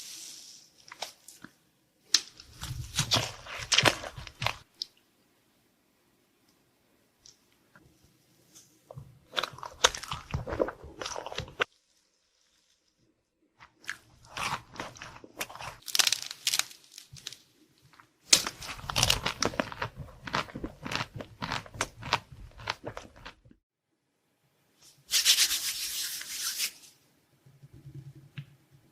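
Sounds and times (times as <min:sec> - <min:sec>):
crunching crisp dessert: 0:00.9 - 0:04.9, 0:08.6 - 0:23.6.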